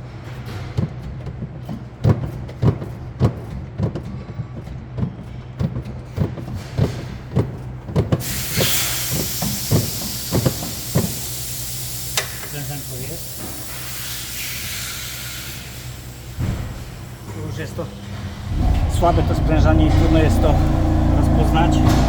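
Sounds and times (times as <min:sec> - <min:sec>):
engine crankshaft knocking: 0:00.0 - 0:11.6, 0:15.7 - 0:22.0
compressed air hissing: 0:08.2 - 0:21.3
low hum: 0:16.8 - 0:22.0.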